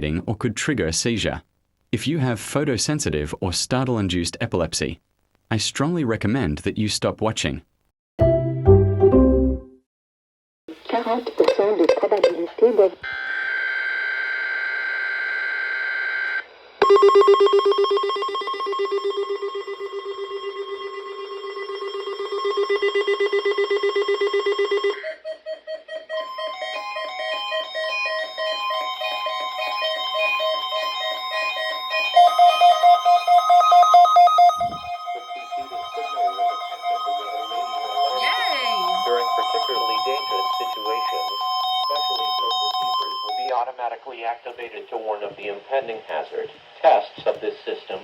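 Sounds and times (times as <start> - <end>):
steady electronic alert tone: 26.5 - 43.5
short beeps at several pitches: 32.2 - 43.5
rapidly pulsing lower tone: 32.3 - 39.8.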